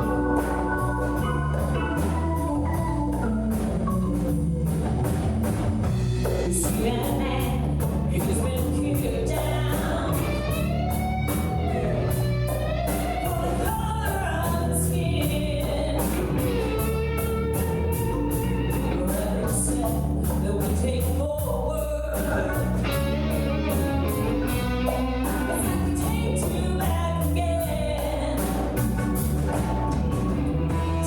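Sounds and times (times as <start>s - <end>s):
bass guitar: 0.0s - 31.0s
steady drum beat: 0.0s - 31.0s
person singing: 6.2s - 31.0s.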